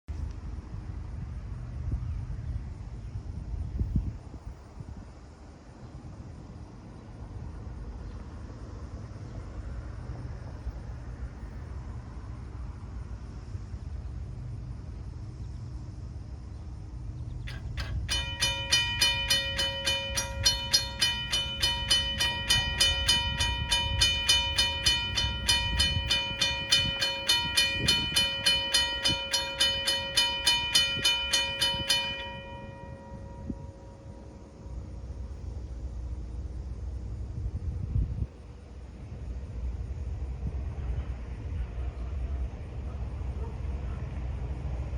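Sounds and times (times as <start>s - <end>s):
railroad crossing bell ringing: 17.5s - 35.8s.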